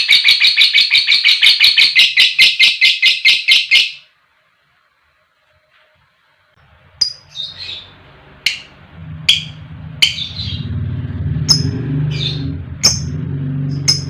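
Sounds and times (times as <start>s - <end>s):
bird chirping shrilly: 0.0s - 4.1s, 7.0s - 10.8s, 11.5s - 14.0s
low steady hum: 4.2s - 14.0s.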